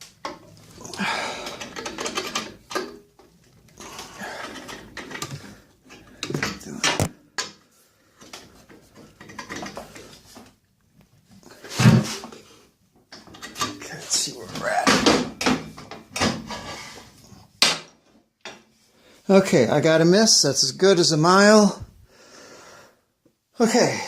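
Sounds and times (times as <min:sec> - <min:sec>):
hardware scraping and clicking: 0:01.4 - 0:07.6.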